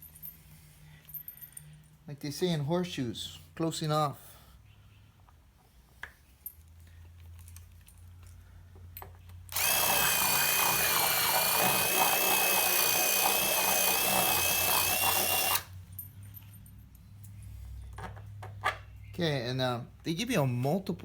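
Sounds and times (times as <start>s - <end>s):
power drill whining: 9.5s - 15.8s.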